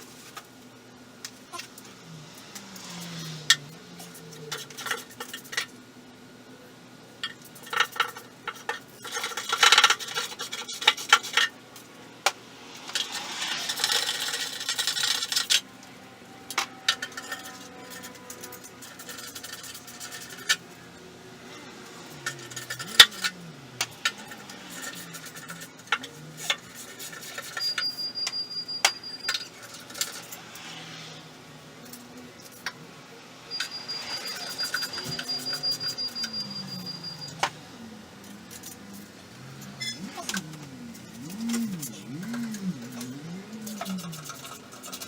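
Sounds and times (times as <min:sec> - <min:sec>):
high steady whine: 0:01.2 - 0:45.0
metallic clinks and clatter: 0:16.6 - 0:20.7, 0:22.0 - 0:30.5.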